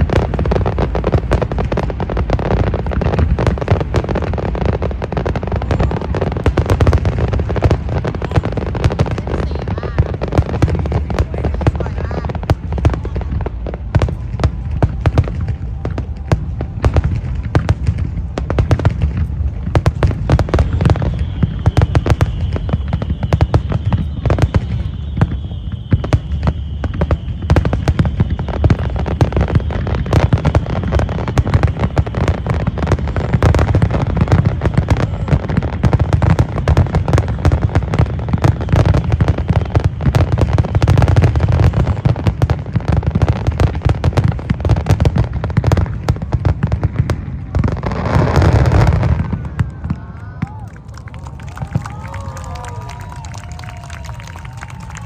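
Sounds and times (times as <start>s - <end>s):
fireworks bangs: 0.0s - 55.0s
thin high whistle: 20.7s - 33.0s.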